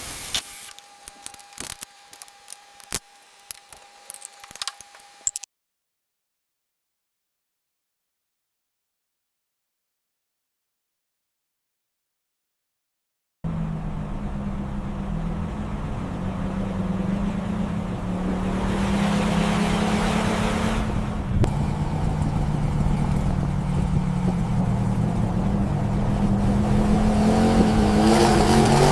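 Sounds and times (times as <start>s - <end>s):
hiss: 0.0s - 0.7s
vehicle engine running: 13.5s - 28.9s.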